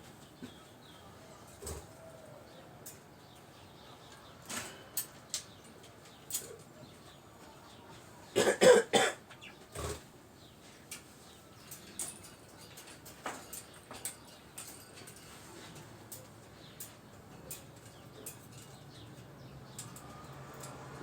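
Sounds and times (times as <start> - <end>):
person coughing: 8.4 - 9.2.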